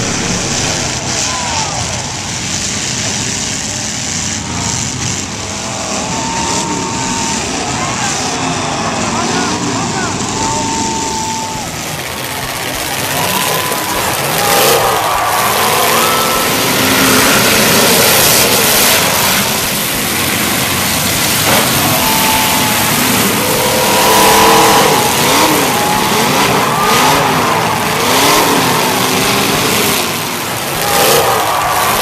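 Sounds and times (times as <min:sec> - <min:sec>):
car engines revving: 0:00.0 - 0:32.0
steady noisy roar: 0:00.0 - 0:32.0.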